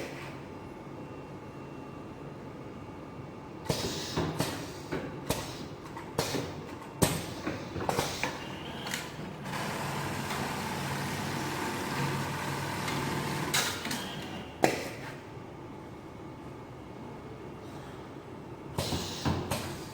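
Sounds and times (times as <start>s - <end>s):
machine running with low hum: 6.7s - 14.6s.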